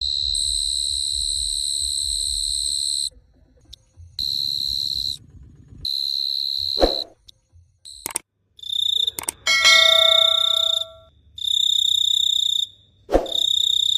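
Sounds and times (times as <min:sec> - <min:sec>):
cricket trilling: 0:04.2 - 0:05.2, 0:07.9 - 0:13.9
sharp click: 0:08.0 - 0:08.2.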